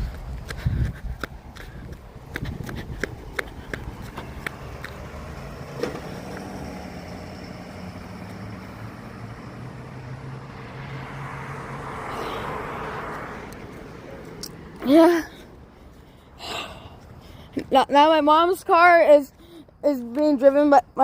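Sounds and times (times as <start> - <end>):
tow truck engine driving off: 1.3 - 15.7.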